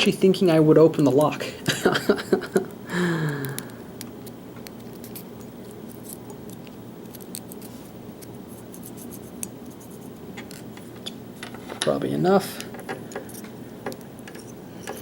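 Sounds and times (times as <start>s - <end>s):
person humming: 2.9s - 3.8s.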